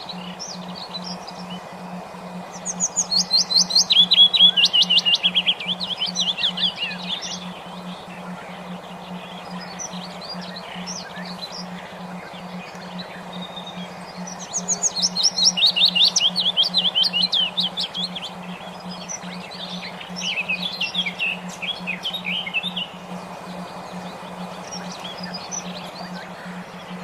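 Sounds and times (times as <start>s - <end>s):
songbird singing: 0.0s - 27.0s.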